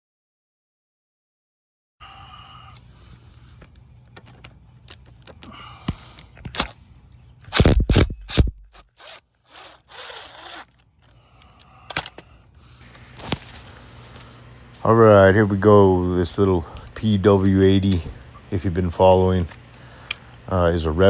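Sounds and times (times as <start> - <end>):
scraping and rubbing: 7.6 - 10.8.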